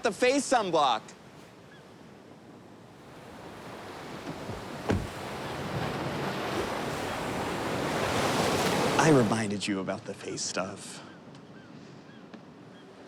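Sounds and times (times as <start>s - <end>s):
ocean waves on beach: 0.0s - 10.4s
sharp thump: 4.9s - 5.2s.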